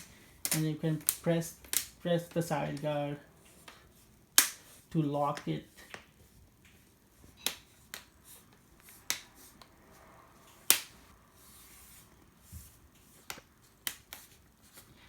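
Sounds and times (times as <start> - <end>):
plastic clips snapping in: 0.0 - 2.0.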